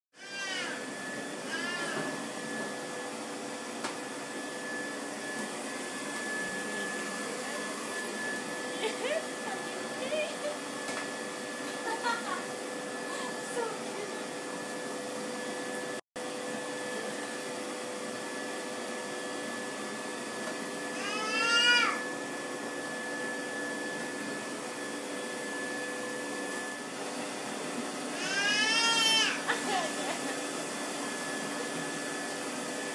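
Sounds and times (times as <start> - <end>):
vacuum cleaner whining: 0.1 - 32.9.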